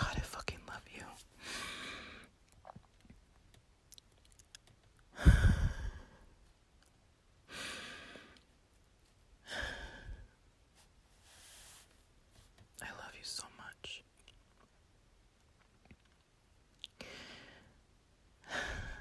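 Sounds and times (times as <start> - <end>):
woman's breathy sighs: 5.2 - 6.2, 18.5 - 19.0.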